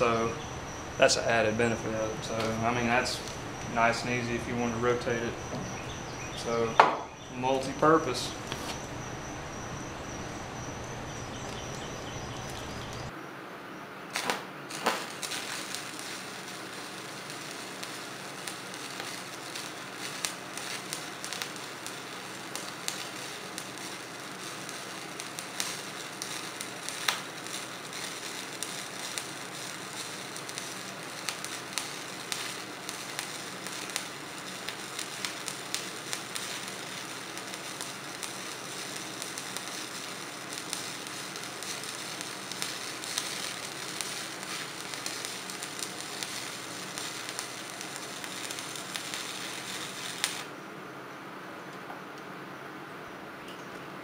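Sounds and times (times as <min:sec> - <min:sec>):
electric arc welding crackle: 0:00.0 - 0:13.1, 0:14.1 - 0:50.6
low steady hum: 0:00.0 - 0:14.1.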